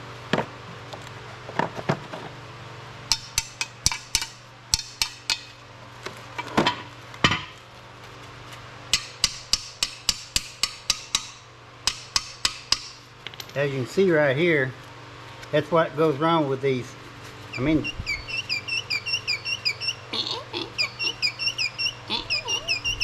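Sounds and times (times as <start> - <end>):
hammer tapping on metal part: 8.9 - 13.0.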